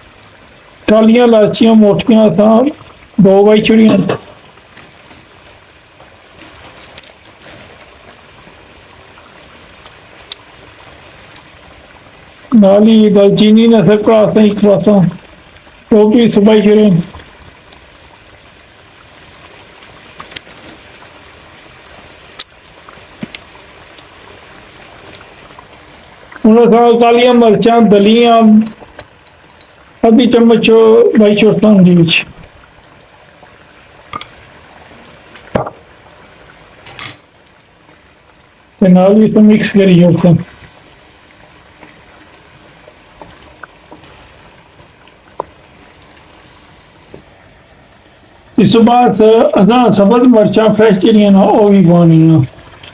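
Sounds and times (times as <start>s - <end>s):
sharp pops from frying: 4.1s - 8.5s, 9.1s - 11.8s, 19.5s - 21.2s, 21.8s - 26.4s, 28.6s - 29.9s, 34.0s - 34.6s, 35.2s - 36.0s, 36.8s - 38.7s, 41.6s - 42.4s, 43.0s - 45.9s
chicken sizzling in a pot: 4.3s - 12.6s, 17.3s - 26.4s, 32.7s - 38.8s, 40.4s - 48.0s.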